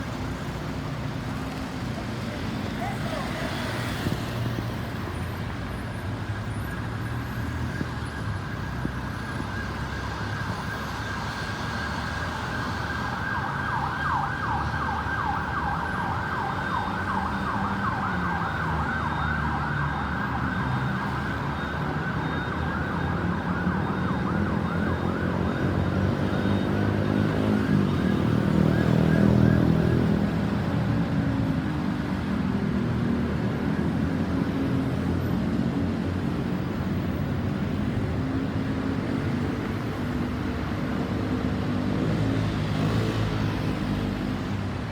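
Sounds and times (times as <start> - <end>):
traffic and engine noise: 0.0 - 44.9
ambulance siren yelping: 7.7 - 31.4.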